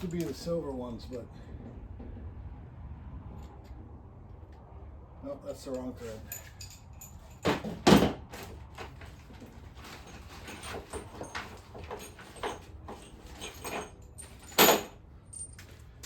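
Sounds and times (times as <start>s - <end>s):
metal bolts clinking and rattling: 0.0s - 0.5s, 5.7s - 16.0s.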